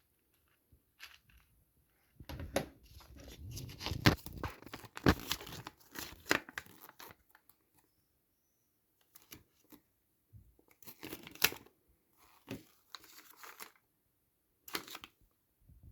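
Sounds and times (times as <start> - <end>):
packaging rustling and tearing: 2.8 - 7.3.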